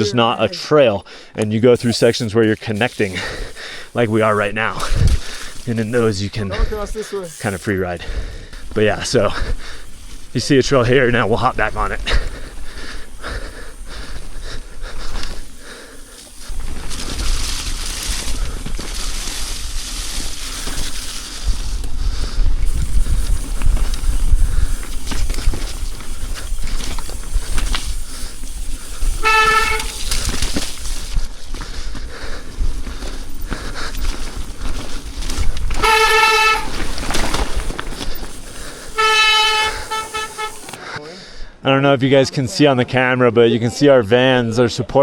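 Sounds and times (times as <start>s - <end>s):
bike tyres hissing: 0.0s - 41.0s
bike clicks and rattles: 1.4s - 40.8s
wind buffeting microphone: 3.2s - 6.9s, 7.6s - 40.6s
van horn toots: 29.2s - 30.3s, 35.7s - 36.9s, 39.0s - 40.8s.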